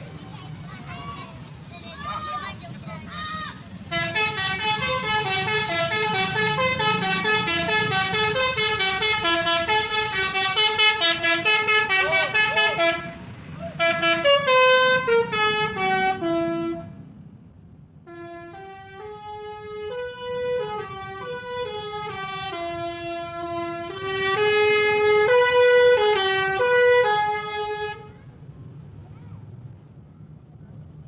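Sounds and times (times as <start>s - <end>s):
bus multi-tone musical horn: 3.8s - 17.1s, 18.0s - 28.4s.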